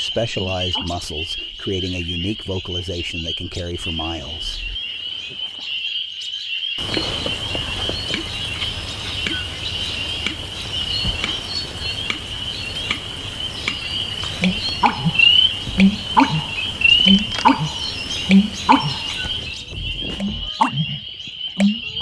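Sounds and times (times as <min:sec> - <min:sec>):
bird deep gulping notes: 0:00.4 - 0:05.7, 0:06.8 - 0:22.0
high-pitched trilling chorus: 0:09.3 - 0:21.1.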